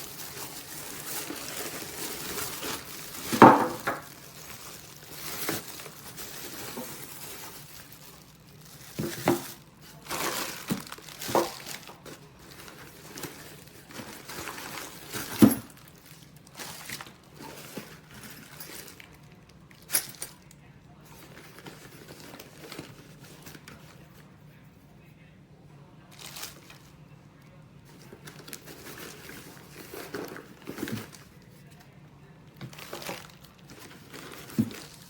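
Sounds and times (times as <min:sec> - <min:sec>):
rustling: 0:00.0 - 0:19.2, 0:27.8 - 0:31.9, 0:32.6 - 0:35.0.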